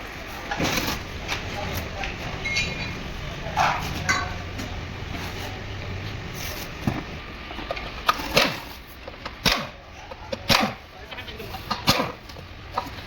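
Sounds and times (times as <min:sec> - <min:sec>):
tools clattering: 0:02.2 - 0:05.4.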